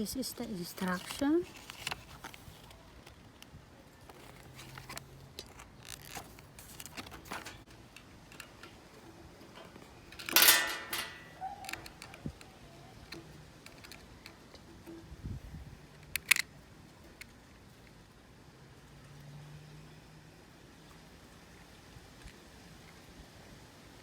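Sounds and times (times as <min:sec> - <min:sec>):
packaging clicks and rustles: 0:00.7 - 0:08.7.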